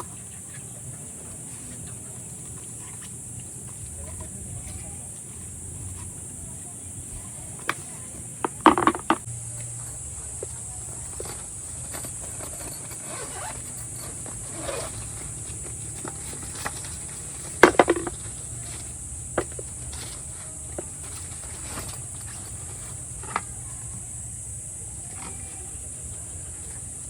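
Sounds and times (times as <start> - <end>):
sharp knocks and clatters: 8.4 - 9.3, 17.6 - 18.3.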